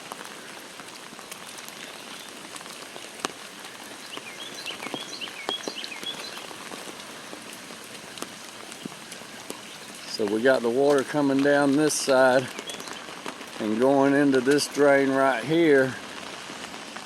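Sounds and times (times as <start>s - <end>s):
steady rain: 0.0s - 17.0s
small bird chirping: 4.0s - 6.6s, 12.5s - 13.1s.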